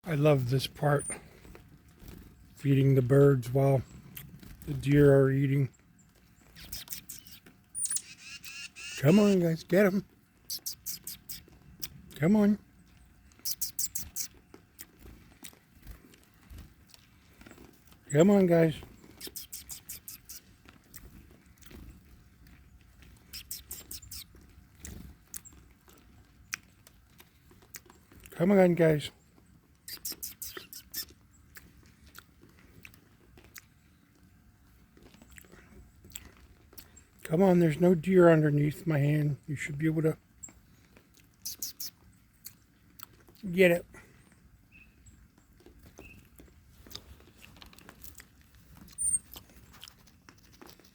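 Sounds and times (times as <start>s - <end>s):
animals crunching feed: 1.1s - 12.2s, 12.9s - 37.8s, 40.4s - 50.9s
faint bird chirps: 6.4s - 9.6s, 10.5s - 11.9s, 13.4s - 14.4s, 19.2s - 20.5s, 23.3s - 24.3s, 29.9s - 31.1s, 41.4s - 42.0s.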